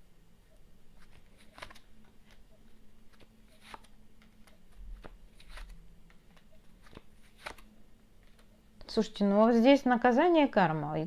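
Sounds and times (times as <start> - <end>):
cards tapping and rustling: 1.0 - 2.5, 3.1 - 8.5.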